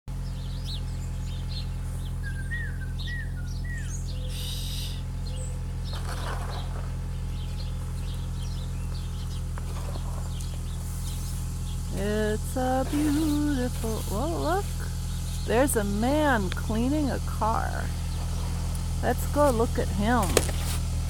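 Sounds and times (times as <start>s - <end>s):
small birds chirping: 0.1s - 20.7s
steady low hum: 0.1s - 21.0s
short down-slurred whistles: 2.2s - 3.9s.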